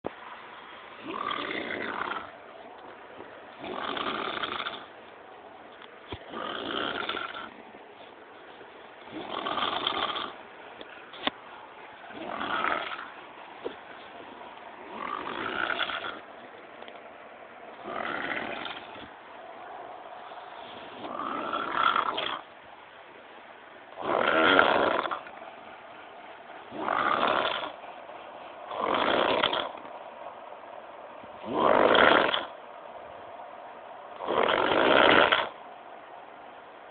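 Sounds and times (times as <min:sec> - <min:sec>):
person snoring: 0:06.3 - 0:07.5
quiet breathing: 0:17.7 - 0:22.6.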